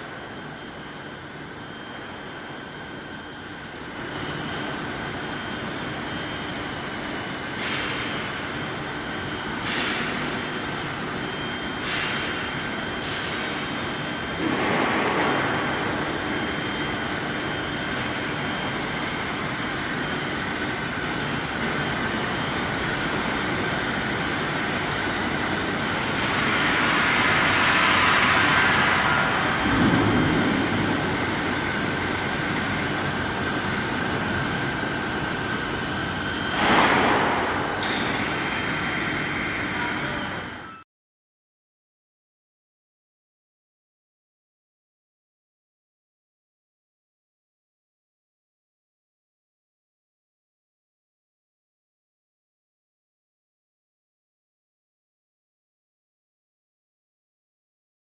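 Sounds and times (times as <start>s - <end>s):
high steady whine: 0.0s - 40.8s
industrial machine rushing noise: 11.3s - 40.6s.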